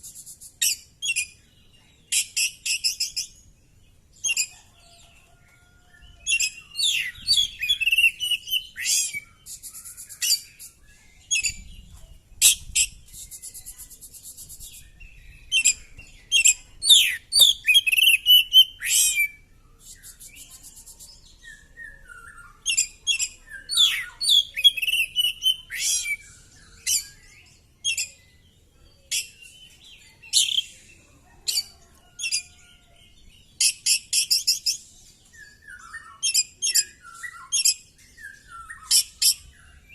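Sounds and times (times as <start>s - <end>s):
songbird chirping and whistling: 0.0s - 3.4s, 4.2s - 39.9s.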